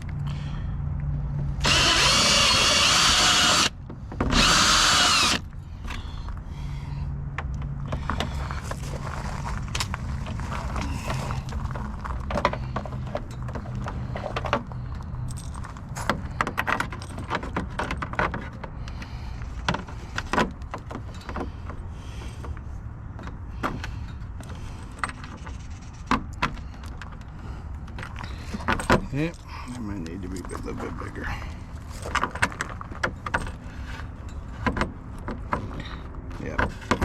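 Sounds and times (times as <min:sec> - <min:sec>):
tools clicking and rattling: 0:12.2 - 0:22.6.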